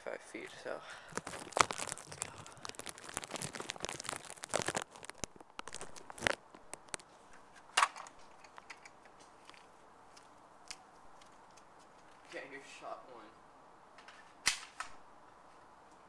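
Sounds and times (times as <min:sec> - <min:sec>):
handling noise crackling: 0:01.1 - 0:09.7.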